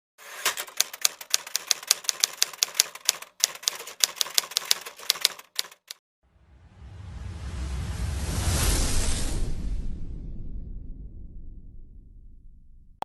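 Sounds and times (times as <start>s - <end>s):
rising whoosh: 6.3s - 12.3s.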